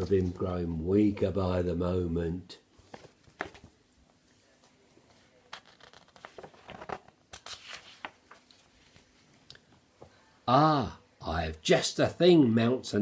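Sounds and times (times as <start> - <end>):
book pages rustling: 0.0 - 0.6, 2.8 - 9.5.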